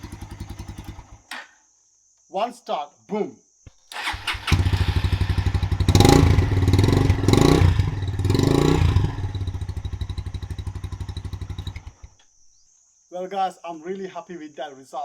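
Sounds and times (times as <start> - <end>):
motorcycle engine revving and idling: 0.0 - 1.2, 4.0 - 12.2.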